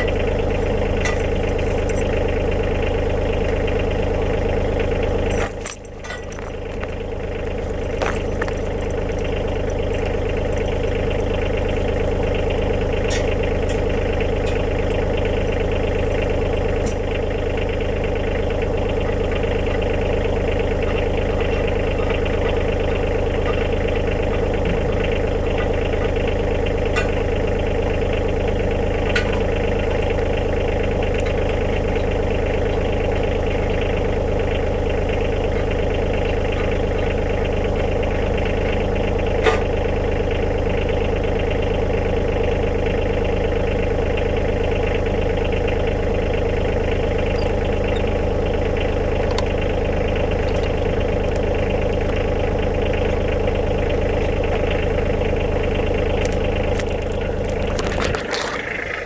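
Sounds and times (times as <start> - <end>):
tractor diesel engine idling: 0.0 - 59.0.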